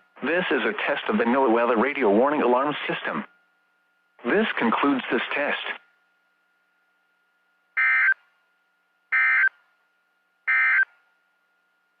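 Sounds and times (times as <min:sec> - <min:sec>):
buzzy two-tone data warble: 0:07.8 - 0:08.2, 0:09.1 - 0:09.5, 0:10.5 - 0:10.9.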